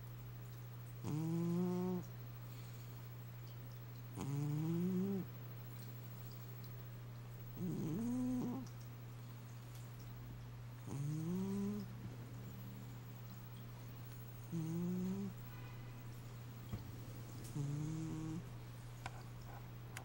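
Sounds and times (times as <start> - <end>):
steady low hum: 0.0 - 20.0
cat snoring: 1.0 - 2.7, 4.2 - 5.3, 7.6 - 8.6, 10.8 - 11.9, 14.4 - 15.4, 17.4 - 18.5.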